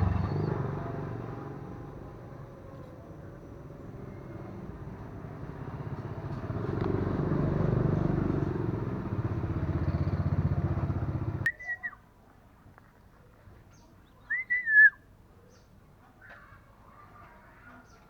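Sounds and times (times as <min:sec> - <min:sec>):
small motorcycle engine running: 0:00.0 - 0:11.5
bird whistled call: 0:11.5 - 0:12.0, 0:14.2 - 0:15.0.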